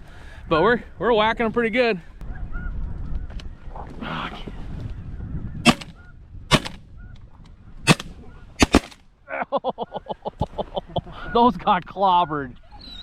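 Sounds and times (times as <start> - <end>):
shotgun blasts: 5.7 - 6.8, 7.9 - 9.0.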